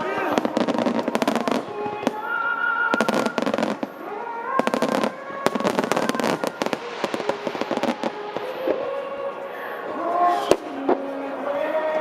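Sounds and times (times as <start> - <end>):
fireworks bursting and crackling: 0.0 - 12.0.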